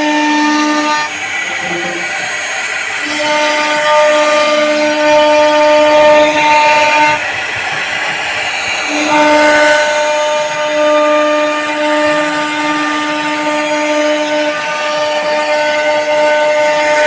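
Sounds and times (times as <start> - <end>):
router spindle whine: 0.0 - 11.8.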